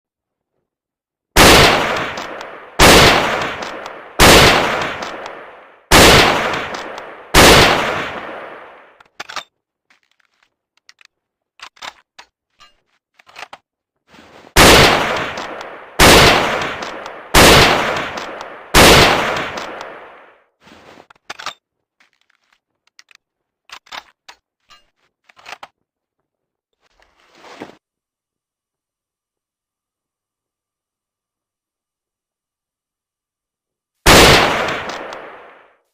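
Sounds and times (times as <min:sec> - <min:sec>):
rifle shots with echo: 0:01.4 - 0:09.0, 0:14.6 - 0:20.4, 0:34.1 - 0:35.7
metallic rifle bolt clicks: 0:09.0 - 0:13.6, 0:22.3 - 0:25.7.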